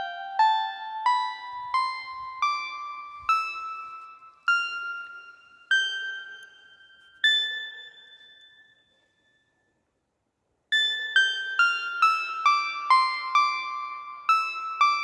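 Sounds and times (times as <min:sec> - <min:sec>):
bell-like keyboard notes: 0:00.0 - 0:09.4.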